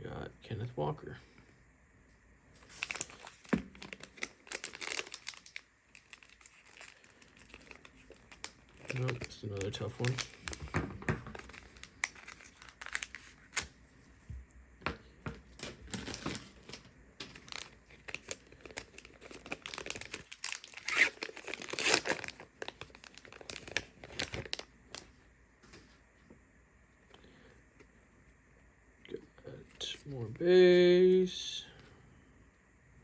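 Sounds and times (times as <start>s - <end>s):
plastic wrapper tearing and crinkling: 2.6s - 13.9s, 15.5s - 25.1s.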